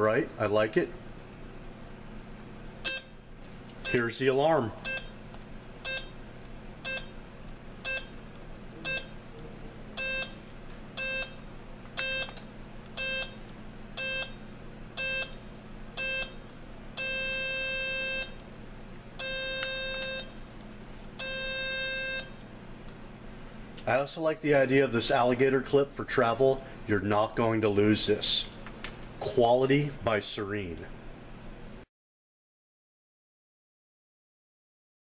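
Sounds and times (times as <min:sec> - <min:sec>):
alarm clock beeping: 0:05.8 - 0:06.1, 0:06.8 - 0:07.1, 0:12.0 - 0:12.3, 0:13.0 - 0:13.3, 0:14.0 - 0:14.3, 0:15.0 - 0:15.3, 0:17.0 - 0:18.3.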